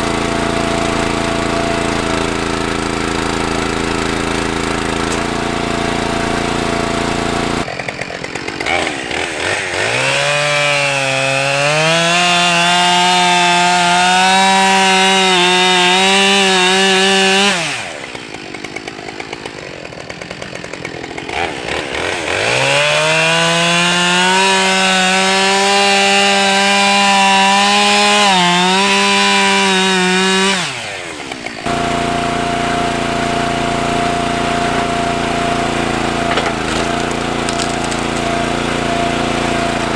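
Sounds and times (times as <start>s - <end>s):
small engine running: 0.0s - 24.6s, 28.4s - 39.9s
chainsaw revving and cutting: 0.0s - 39.9s.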